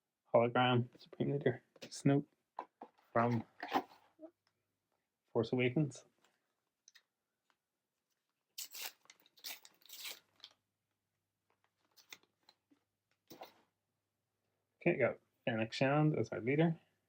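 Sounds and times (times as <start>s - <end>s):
wrapper tearing and crinkling: 8.6s - 10.6s.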